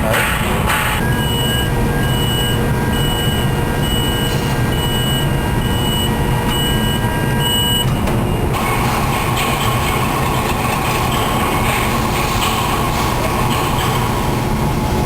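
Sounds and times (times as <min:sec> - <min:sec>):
machinery rumble: 0:00.0 - 0:15.0.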